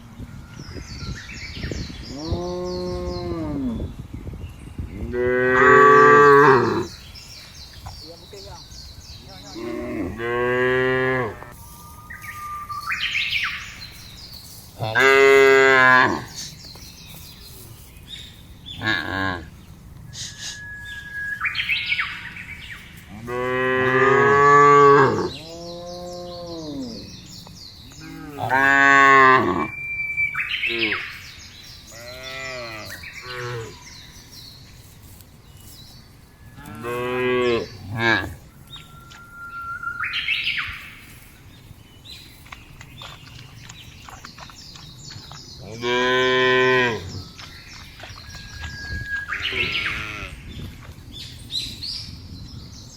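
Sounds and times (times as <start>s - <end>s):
cows mooing: 5.1s - 7.0s, 9.5s - 11.6s, 14.8s - 16.4s, 23.1s - 27.1s, 28.0s - 29.8s, 36.6s - 38.4s, 45.7s - 47.3s, 49.4s - 50.4s.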